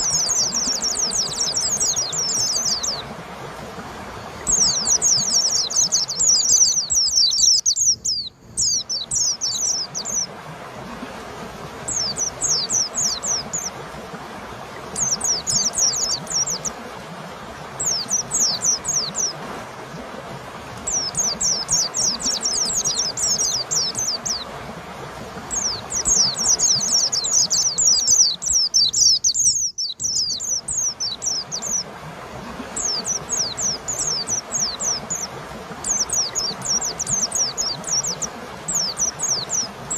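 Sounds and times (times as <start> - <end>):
bird chirping rapidly: 25.5 - 31.8.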